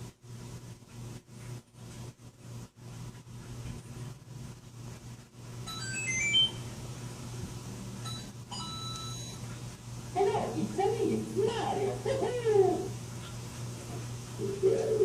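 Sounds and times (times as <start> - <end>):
steady low hum: 0.0 - 15.0
electronic beeping jingle: 5.7 - 6.6, 8.1 - 9.4.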